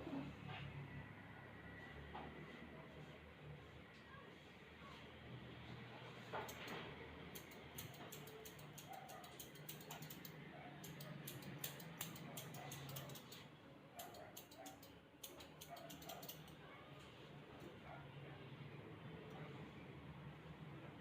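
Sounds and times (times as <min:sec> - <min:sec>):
quick irregular clicks and taps: 0:06.4 - 0:16.6.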